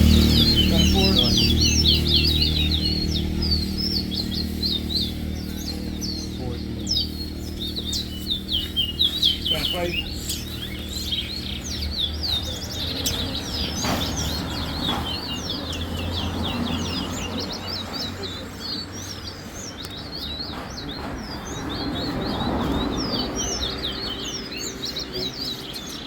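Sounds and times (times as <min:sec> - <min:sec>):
steady low hum: 0:00.0 - 0:14.6
songbirds chirping: 0:00.0 - 0:26.0.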